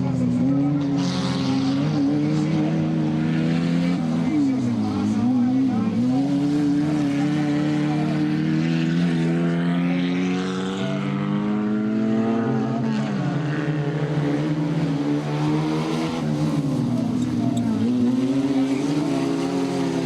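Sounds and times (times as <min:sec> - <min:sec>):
race car engines revving: 0:00.0 - 0:20.0.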